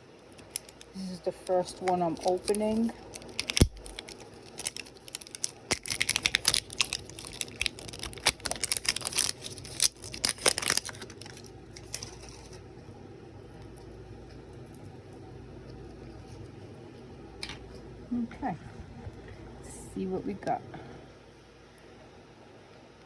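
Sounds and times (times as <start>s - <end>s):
wrapper being torn and crinkled: 0.2s - 12.6s.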